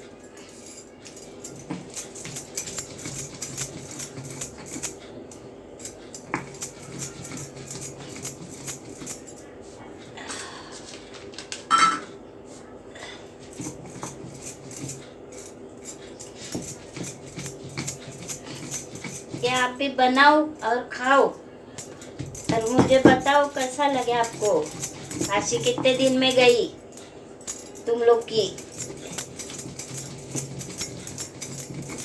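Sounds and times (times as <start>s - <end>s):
stone roller grinding on stone: 1.4s - 4.8s, 6.0s - 9.3s, 13.6s - 15.0s, 15.9s - 20.0s, 21.8s - 26.7s, 27.7s - 32.0s.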